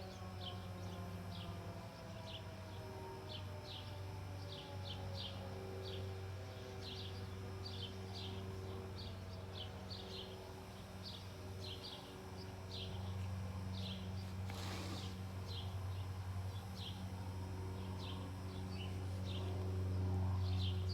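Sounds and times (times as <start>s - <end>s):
tornado siren tone: 0.0s - 6.5s
steady low hum: 0.0s - 20.9s.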